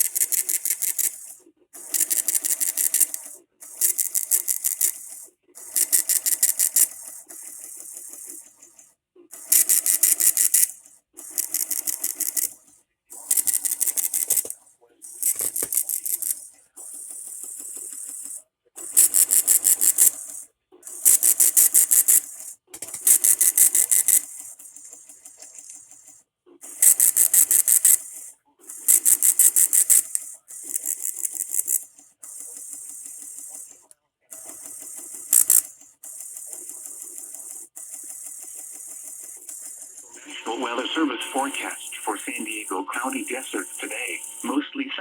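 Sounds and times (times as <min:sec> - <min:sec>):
raspy digital data bursts: 0:00.0 - 0:08.4, 0:09.4 - 0:12.6, 0:13.2 - 0:14.5, 0:15.1 - 0:16.3, 0:18.8 - 0:20.4, 0:21.0 - 0:24.8, 0:26.7 - 0:28.2, 0:28.8 - 0:31.8, 0:34.5 - 0:44.7
radio hiss: 0:40.2 - 0:45.0.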